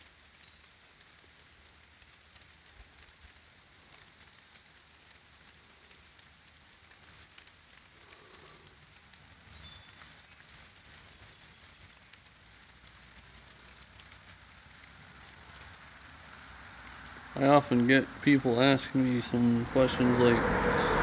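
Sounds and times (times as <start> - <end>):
light rain hissing: 0.0 - 21.0
small bird chirping: 9.5 - 13.2.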